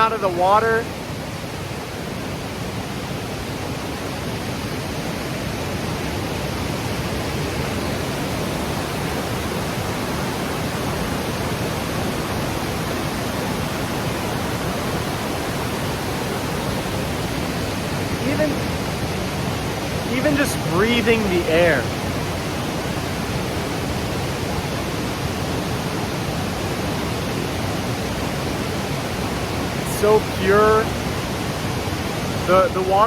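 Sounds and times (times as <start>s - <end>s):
waterfall roaring: 0.0s - 33.0s.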